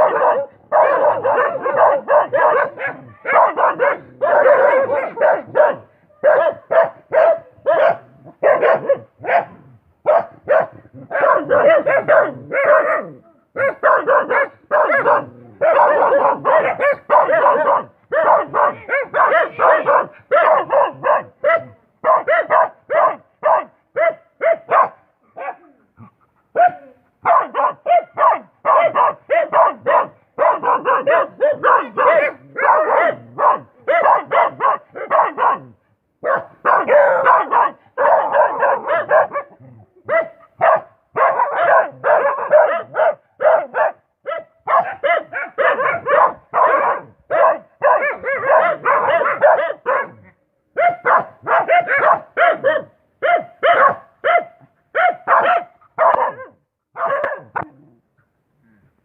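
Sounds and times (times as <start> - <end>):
dog barking rapidly: 0.0 - 25.6, 26.6 - 50.2, 50.8 - 57.6.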